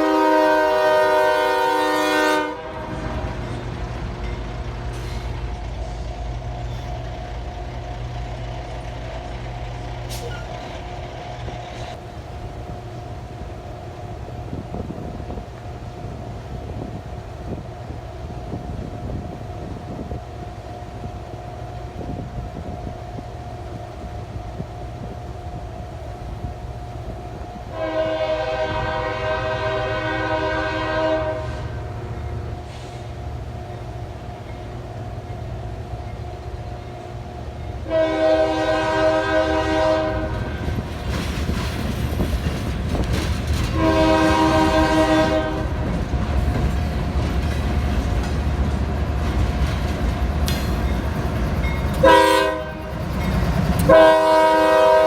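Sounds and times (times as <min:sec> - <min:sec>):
locomotive horn blast: 0:00.0 - 0:03.7, 0:27.7 - 0:32.0, 0:37.8 - 0:40.8, 0:43.7 - 0:45.9, 0:52.0 - 0:53.0, 0:53.8 - 0:55.0
diesel locomotive engine rumble: 0:00.0 - 0:55.0.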